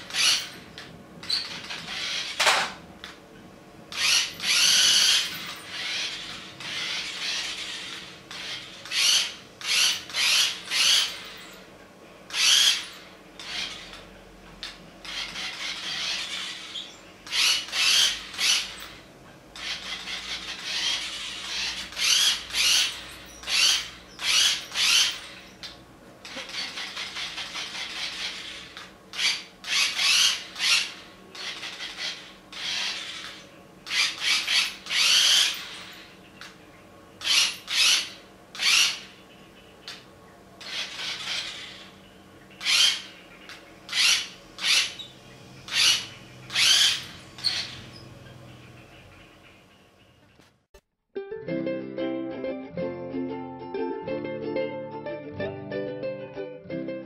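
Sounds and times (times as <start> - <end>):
toy car motor whirring: 0.0 - 0.6, 1.2 - 2.7, 3.9 - 11.6, 12.3 - 14.1, 14.7 - 19.0, 19.6 - 36.1, 37.2 - 39.2, 40.6 - 42.0, 42.6 - 43.1, 43.9 - 48.1.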